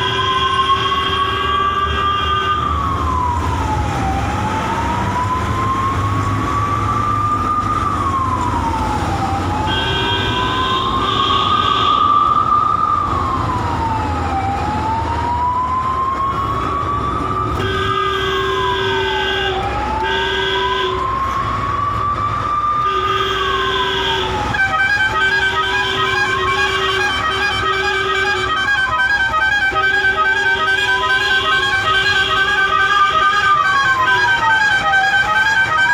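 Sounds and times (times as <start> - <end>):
ambulance siren wailing: 0.0 - 35.9
engine and road rumble: 0.0 - 35.9.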